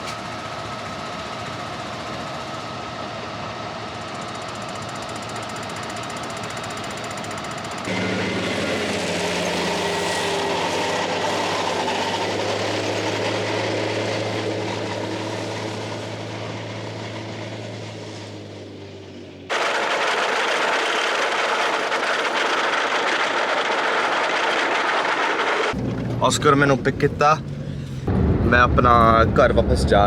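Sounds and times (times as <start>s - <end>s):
engine hum: 0.0s - 30.0s
moving vehicle rushing noise: 7.8s - 30.0s.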